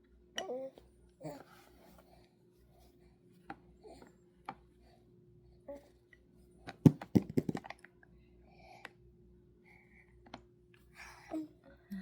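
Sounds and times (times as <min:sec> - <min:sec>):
faint steady hum: 0:00.0 - 0:12.0
knocks and clatters on hard surface: 0:06.8 - 0:07.7.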